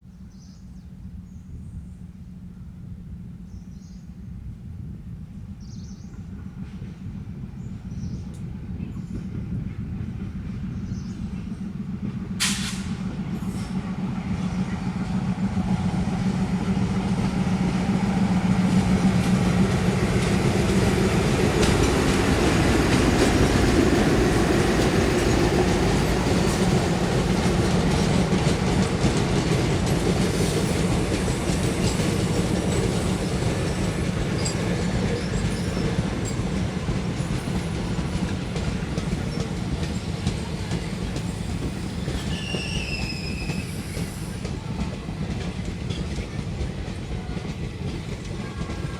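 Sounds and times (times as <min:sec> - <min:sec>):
locomotive engine low hum: 0:00.2 - 0:48.9
train wheels clickety-clack: 0:05.8 - 0:48.9
short sharp hiss: 0:12.4 - 0:13.0
wheel squeal: 0:41.2 - 0:44.4.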